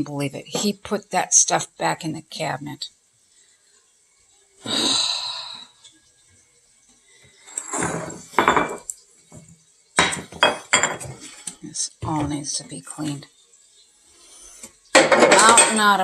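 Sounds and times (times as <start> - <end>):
dishes and glassware clinking: 7.4 - 12.4, 14.9 - 16.0.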